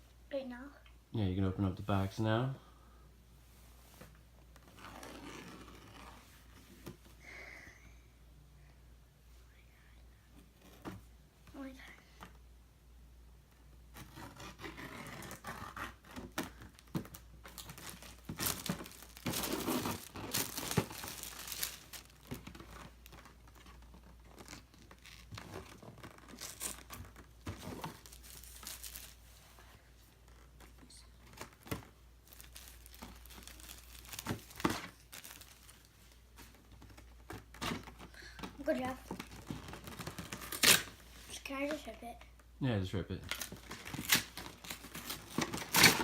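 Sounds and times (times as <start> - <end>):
packaging tearing and crinkling: 14.0 - 29.2, 31.4 - 35.9, 39.2 - 41.0, 43.3 - 46.0.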